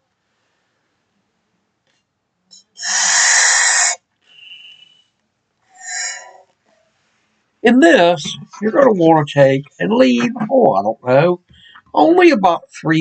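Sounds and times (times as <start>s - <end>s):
squeaky whistle: 4.3s - 5.1s.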